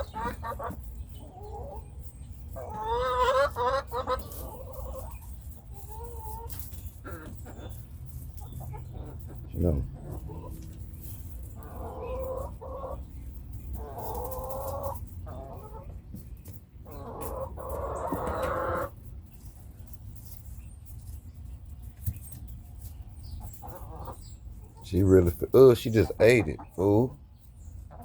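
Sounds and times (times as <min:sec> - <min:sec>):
chickens clucking: 0:00.0 - 0:28.0.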